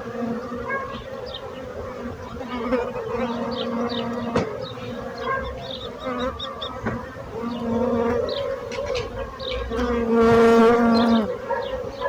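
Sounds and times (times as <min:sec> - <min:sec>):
bees buzzing: 0:00.0 - 0:08.6, 0:09.6 - 0:11.4.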